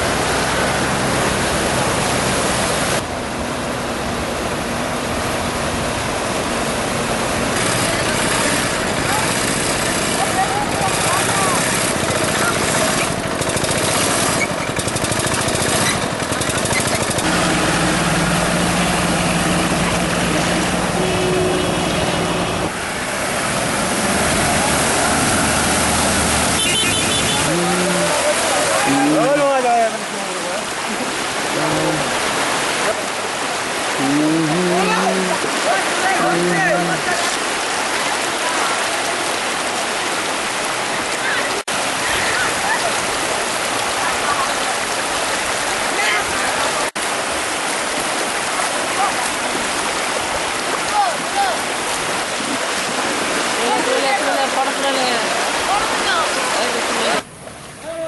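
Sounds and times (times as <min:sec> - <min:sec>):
engine running: 0:00.0 - 0:29.4
floodwater rushing: 0:00.0 - 0:58.0.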